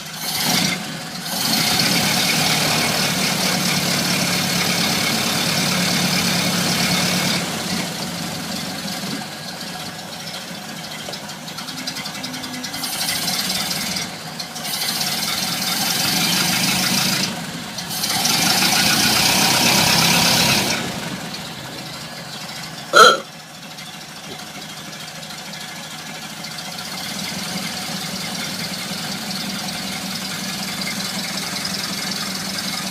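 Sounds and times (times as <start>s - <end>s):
car engine running: 0.0s - 32.9s
loud squawk: 23.0s - 23.2s.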